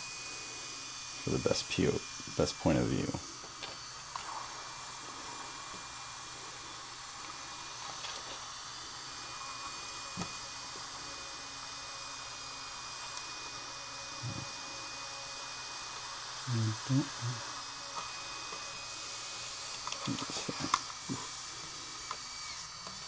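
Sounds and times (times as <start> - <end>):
thin high whine: 0.0 - 6.6, 13.9 - 15.0, 16.4 - 23.0
cooling fan whirring: 0.0 - 23.0.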